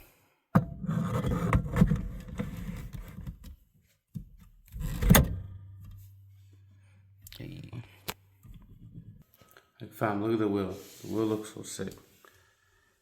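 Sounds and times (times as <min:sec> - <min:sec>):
steering wheel clunk: 0:04.7 - 0:06.0
low steady hum: 0:04.7 - 0:09.2.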